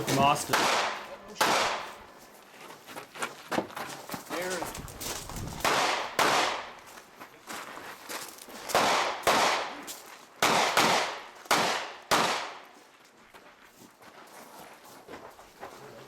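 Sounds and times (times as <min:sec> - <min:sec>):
rifle shots echoing: 0:00.2 - 0:02.0, 0:05.5 - 0:06.8, 0:08.7 - 0:12.7.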